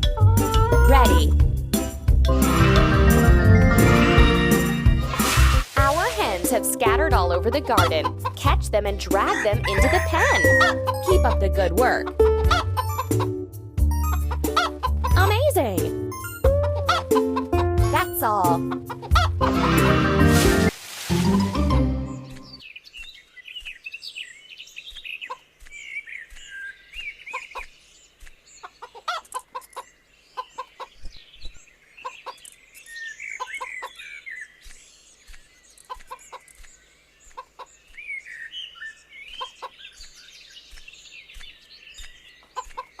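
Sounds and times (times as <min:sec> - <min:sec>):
hens clucking: 0:02.3 - 0:08.4, 0:09.1 - 0:13.4, 0:14.2 - 0:15.4, 0:16.5 - 0:17.7, 0:18.5 - 0:21.9
small songbirds chirping: 0:22.2 - 0:43.0.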